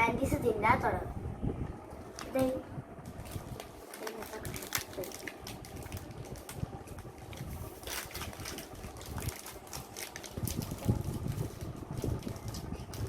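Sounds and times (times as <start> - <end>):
candy wrappers crinkling: 3.1 - 13.0
microphone handling rumble: 5.6 - 13.0.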